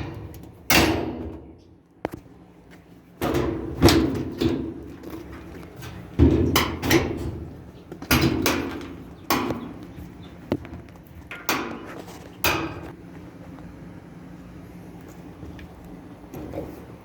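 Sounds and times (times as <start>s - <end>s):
sheet metal clunks and knocks: 0.0s - 1.6s, 3.2s - 9.8s, 11.3s - 12.9s.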